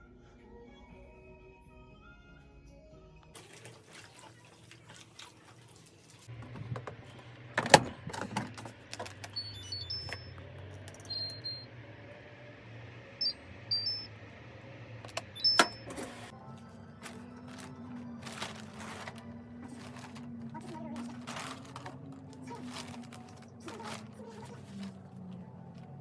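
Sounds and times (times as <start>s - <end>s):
low steady machine hum: 3.4s - 26.0s
short high electronic beeps: 9.4s - 10.4s, 11.0s - 11.7s, 13.2s - 14.1s.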